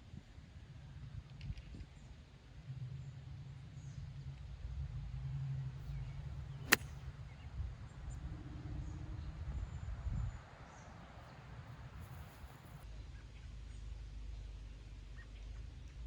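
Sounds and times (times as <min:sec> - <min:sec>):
wind rumble on microphone: 0:04.0 - 0:12.8.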